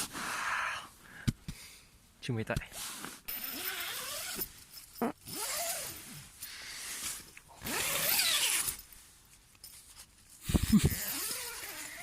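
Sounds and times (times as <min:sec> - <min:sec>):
zipper pulled rasping: 0:03.3 - 0:06.3, 0:07.6 - 0:08.8, 0:10.5 - 0:12.0.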